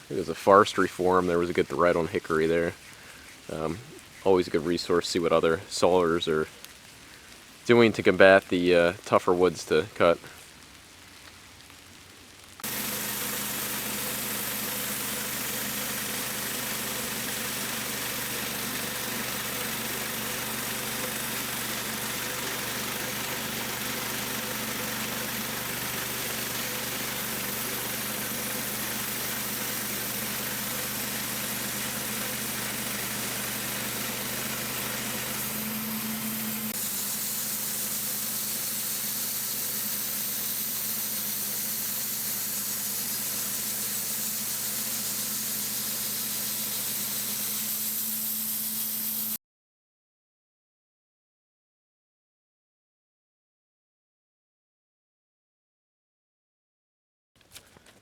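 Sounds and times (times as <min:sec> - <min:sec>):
dense hiss: 0:00.0 - 0:11.2, 0:12.6 - 0:49.4
sawmill engine running: 0:12.6 - 0:49.4.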